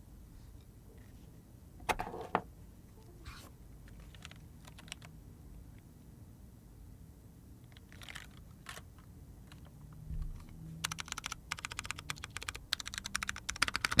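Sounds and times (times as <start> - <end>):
typing on mechanical keyboard: 4.0 - 5.1, 7.8 - 8.8, 10.8 - 14.0.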